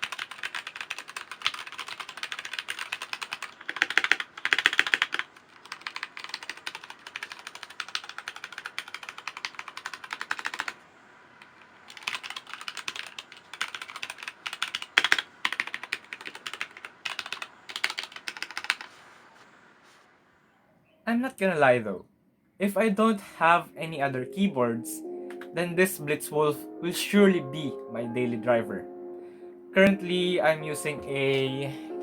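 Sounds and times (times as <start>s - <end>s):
mechanical keyboard typing: 0.0s - 10.8s, 11.4s - 18.9s.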